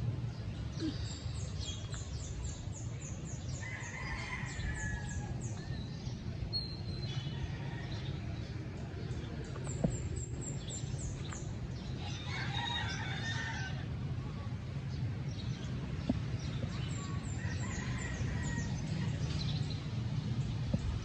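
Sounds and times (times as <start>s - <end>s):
rooster crowing: 12.0s - 13.8s.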